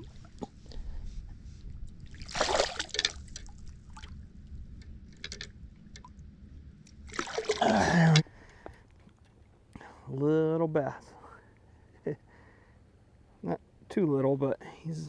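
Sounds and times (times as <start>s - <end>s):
water splashing and dripping: 2.0s - 4.2s, 6.9s - 8.2s.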